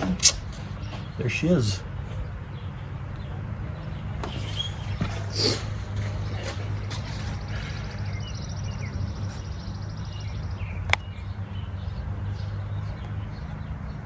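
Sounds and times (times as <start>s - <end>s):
sharp click: 0.0s - 0.6s.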